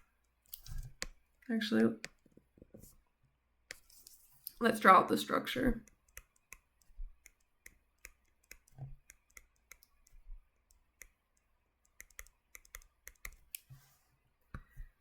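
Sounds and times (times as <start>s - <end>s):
faint computer clicking: 5.8s - 13.7s.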